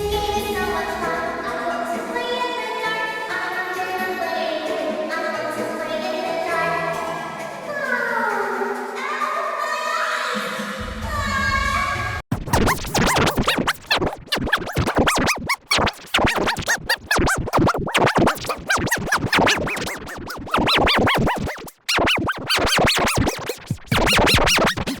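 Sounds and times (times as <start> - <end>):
stuttering processed audio effect: 12.3 - 25.0.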